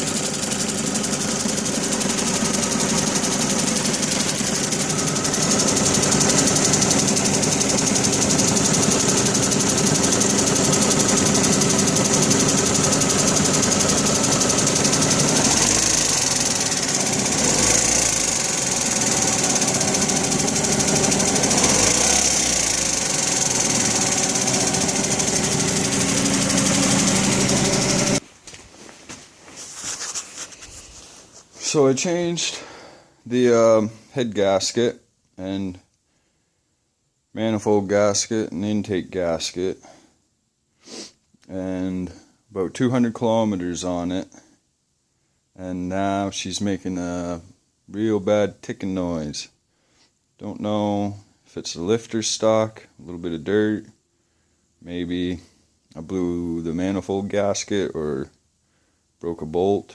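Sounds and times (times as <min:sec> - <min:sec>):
car engine running: 0:00.0 - 0:28.2
engine ticking: 0:00.0 - 0:28.2.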